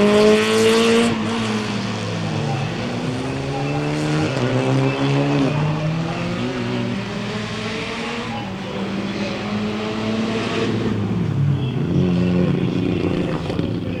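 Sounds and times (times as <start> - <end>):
rally car engine revving: 0.0 - 14.0.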